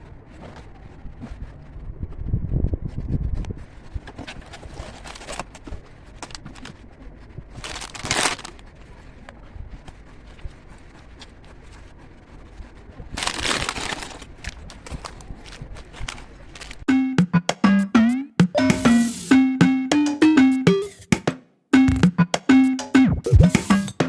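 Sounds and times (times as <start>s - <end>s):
packaging crinkling and rustling: 7.6s - 8.6s, 13.2s - 16.8s.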